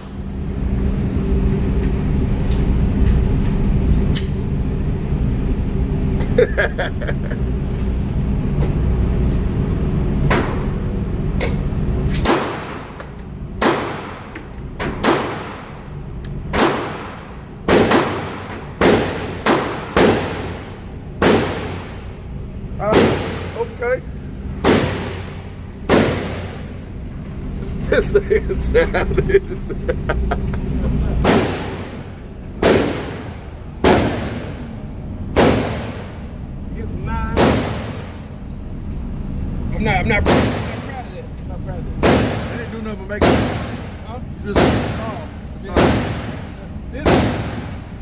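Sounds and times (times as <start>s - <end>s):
low hum: 0.0s - 45.6s
gunshots ringing out: 12.2s - 13.0s, 13.6s - 14.3s, 14.9s - 15.7s, 16.5s - 22.0s, 22.9s - 23.7s, 24.6s - 26.7s, 31.2s - 34.6s, 35.4s - 36.2s, 37.4s - 38.2s, 40.2s - 40.9s, 42.0s - 42.6s, 43.2s - 44.0s, 44.6s - 47.9s.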